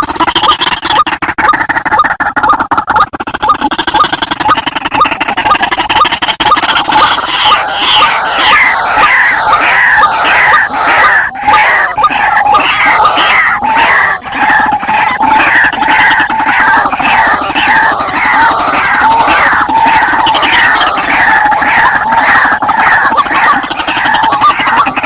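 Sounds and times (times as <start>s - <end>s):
birds making harsh repeated calls: 0.0s - 25.0s.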